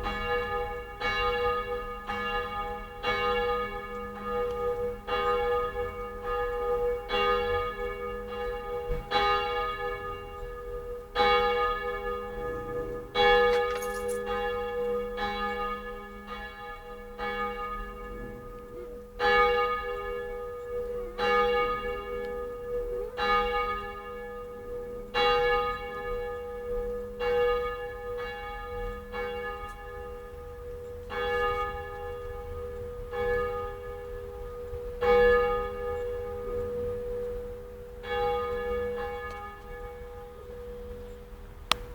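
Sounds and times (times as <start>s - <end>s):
church bells ringing: 0.0s - 41.3s.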